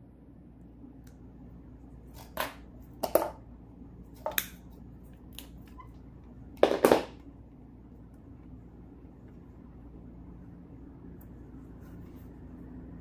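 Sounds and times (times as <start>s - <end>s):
hands scraping and rustling cord: 11.2s - 12.8s.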